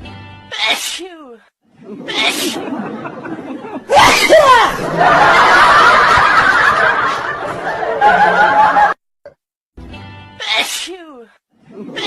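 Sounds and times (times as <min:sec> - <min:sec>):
people laughing and snickering: 0:01.8 - 0:09.0, 0:11.6 - 0:12.0.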